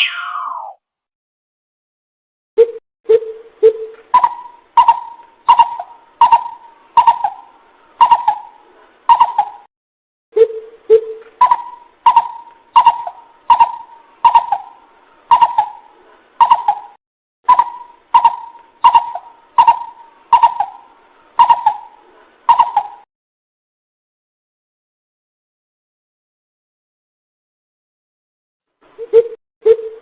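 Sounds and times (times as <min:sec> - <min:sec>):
bird call notes with clicks: 0:02.7 - 0:09.7, 0:10.4 - 0:15.8, 0:16.4 - 0:20.8, 0:21.4 - 0:23.0.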